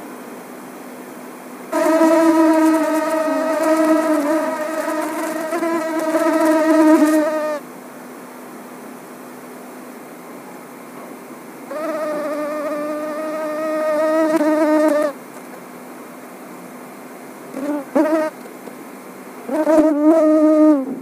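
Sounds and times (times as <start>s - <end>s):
mosquito whining: 1.7s - 7.7s, 11.7s - 15.2s, 17.6s - 18.4s, 19.5s - 21.0s.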